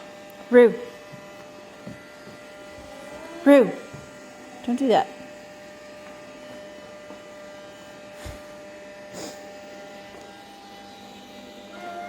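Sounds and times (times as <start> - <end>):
robot vacuum humming: 0.0 - 12.0
short scuff: 8.2 - 8.5.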